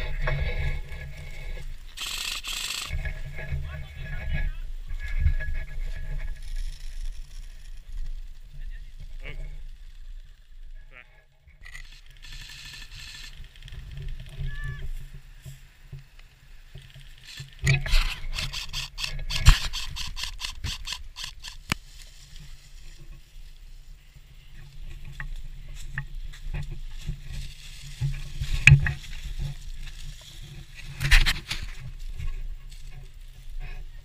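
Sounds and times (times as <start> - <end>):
rapid sharp clicks: 2.0 - 3.1, 11.6 - 13.6, 17.2 - 21.8.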